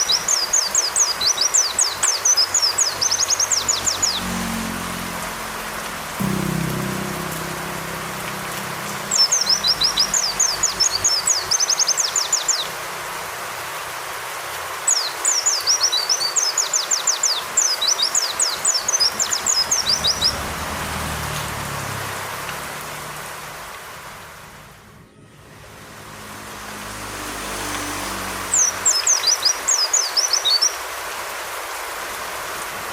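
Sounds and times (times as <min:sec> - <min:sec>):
rain hiss: 0:00.0 - 0:25.0, 0:25.6 - 0:32.9
bird singing high rapid notes: 0:06.2 - 0:12.8.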